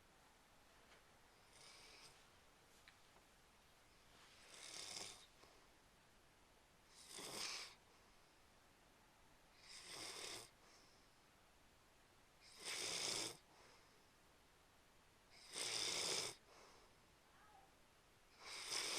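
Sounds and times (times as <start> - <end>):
snoring: 1.4 - 2.1, 4.4 - 5.3, 6.9 - 7.8, 9.6 - 10.6, 12.4 - 13.5, 15.3 - 16.4, 18.4 - 18.9.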